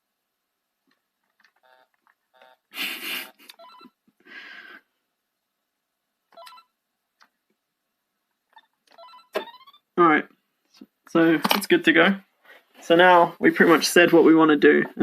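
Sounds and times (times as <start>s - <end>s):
handheld game console beeps: 1.6s - 2.6s, 3.5s - 4.0s, 6.3s - 6.8s, 8.5s - 9.9s.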